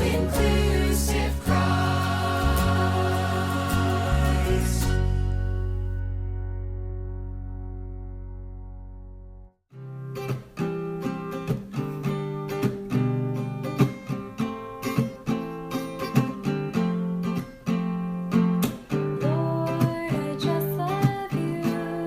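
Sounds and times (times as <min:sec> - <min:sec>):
strummed acoustic guitar: 0:00.0 - 0:06.2, 0:09.8 - 0:22.0
held chord: 0:00.0 - 0:08.5.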